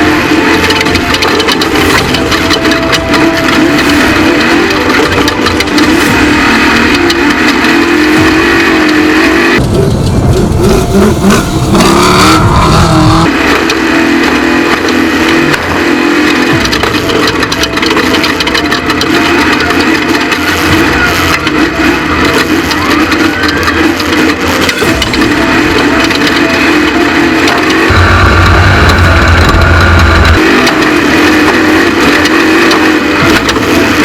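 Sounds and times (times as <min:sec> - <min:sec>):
rattling and crunching over rough ground: 0:00.0 - 0:34.0
truck engine running hard: 0:00.0 - 0:34.0
heavy low rumble: 0:01.6 - 0:13.4, 0:27.9 - 0:30.6.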